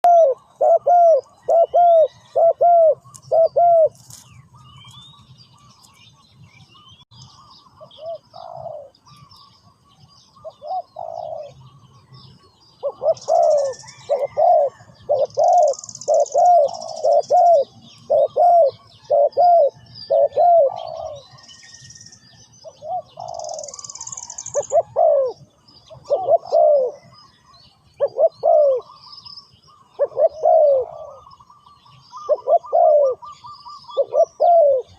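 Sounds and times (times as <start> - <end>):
dove cooing: 0.0 - 4.2, 7.4 - 9.3, 10.4 - 11.6, 12.8 - 21.5, 22.6 - 27.2, 28.0 - 29.1, 29.8 - 34.9
small birds chirping: 0.0 - 34.9.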